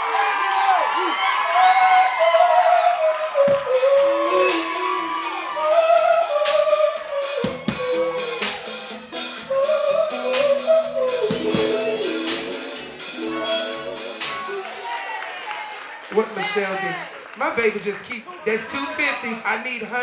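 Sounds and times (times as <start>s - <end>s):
woman singing: 3.4s - 8.7s, 9.4s - 14.8s
drum kit and cymbals: 3.5s - 15.0s
bass: 3.6s - 14.8s.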